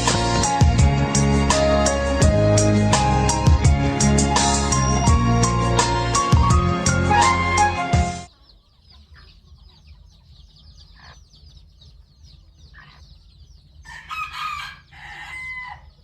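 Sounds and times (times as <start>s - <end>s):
chickens clucking: 8.3s - 16.0s
rooster crowing: 13.8s - 16.0s.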